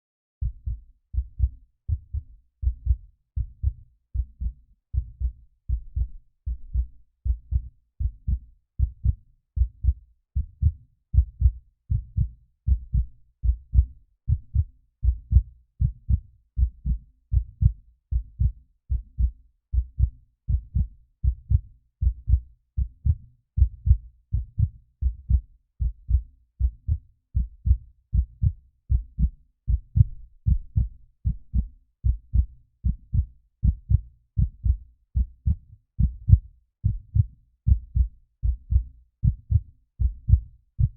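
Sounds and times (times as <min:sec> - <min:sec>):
heartbeat double thumps: 0:00.4 - 0:40.9.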